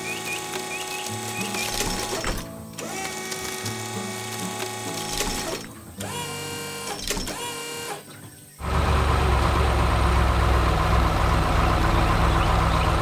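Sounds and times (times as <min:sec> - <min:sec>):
mechanical whirring: 0:00.0 - 0:08.0
background music: 0:00.0 - 0:08.6.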